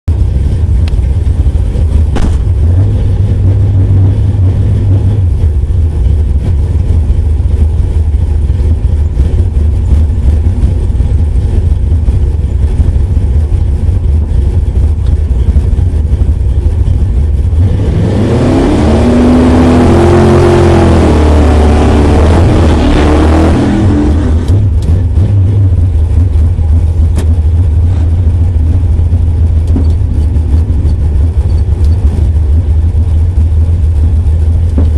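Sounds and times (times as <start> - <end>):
car engine idling roughly: 0.1 - 17.7, 24.6 - 34.9.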